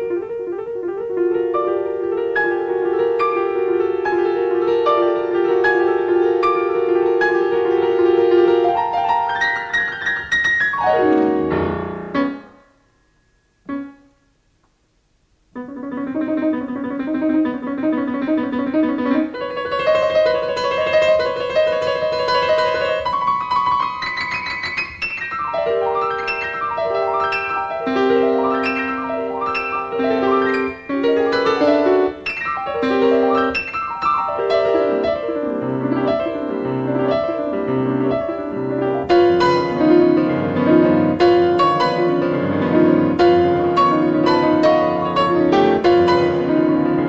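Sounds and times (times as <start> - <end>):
solo piano classical piece: 0.0 - 47.0.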